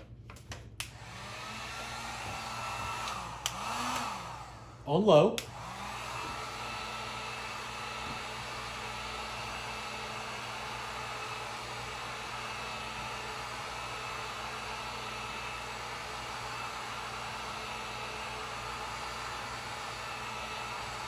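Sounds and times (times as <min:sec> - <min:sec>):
heat gun fan hissing: 0:00.8 - 0:11.6.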